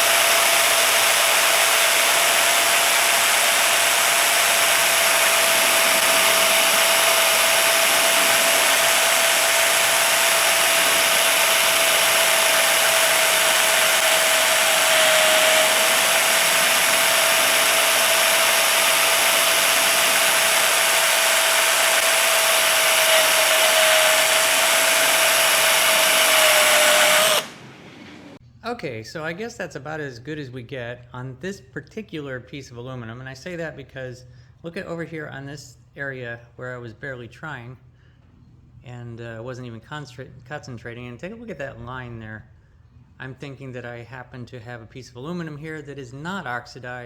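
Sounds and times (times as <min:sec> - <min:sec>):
electric drill buffing metal: 0:00.0 - 0:27.6.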